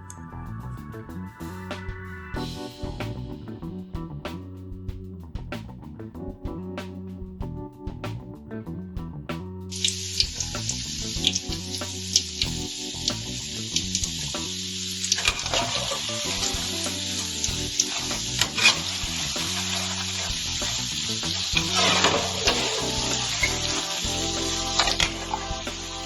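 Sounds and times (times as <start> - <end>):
dough sizzling in hot oil: 17.0 - 22.7.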